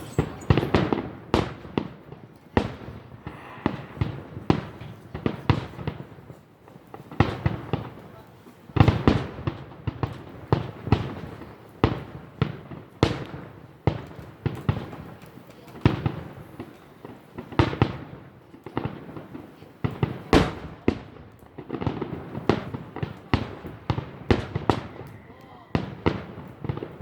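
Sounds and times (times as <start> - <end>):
firework shell bursts: 0.0 - 1.5.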